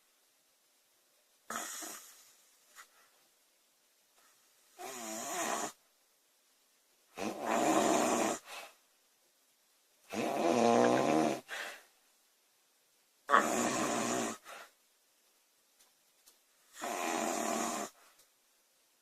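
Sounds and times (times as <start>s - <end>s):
woman snoring: 1.5s - 2.2s, 4.8s - 5.8s, 7.2s - 8.5s, 10.1s - 11.5s, 13.3s - 14.5s, 16.8s - 18.0s.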